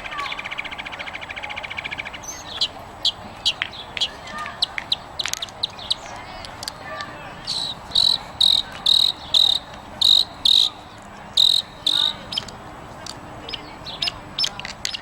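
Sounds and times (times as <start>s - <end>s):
high chirps: 0.0s - 15.0s.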